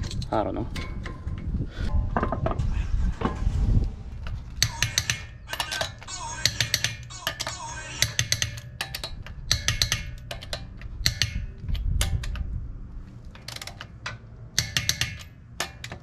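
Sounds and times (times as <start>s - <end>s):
ratchet wrench clicking: 4.6s - 12.5s, 13.4s - 16.0s.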